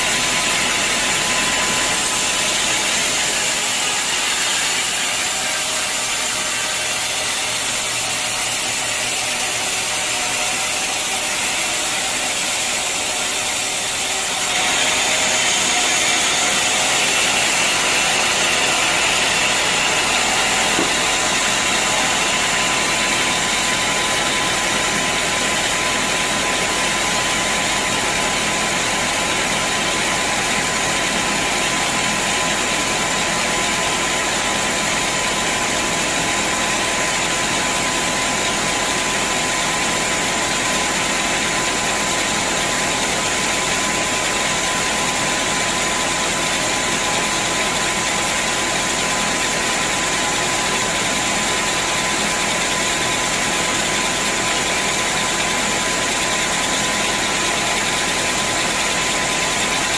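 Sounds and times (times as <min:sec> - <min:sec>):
sawmill machinery running: 0:00.0 - 0:59.9
machinery whine: 0:13.5 - 0:34.0.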